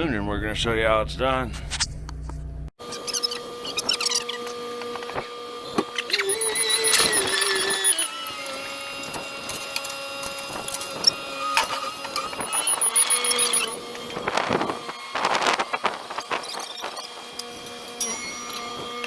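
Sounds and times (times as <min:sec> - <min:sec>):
hoist motor whine: 0:02.9 - 0:19.0.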